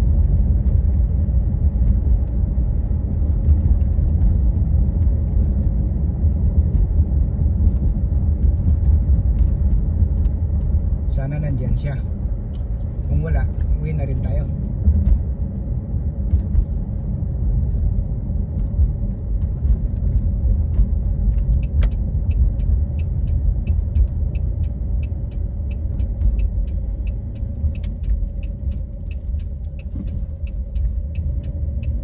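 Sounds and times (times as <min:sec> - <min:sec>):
car engine running: 0:00.0 - 0:32.0
light even ticking: 0:21.5 - 0:32.0.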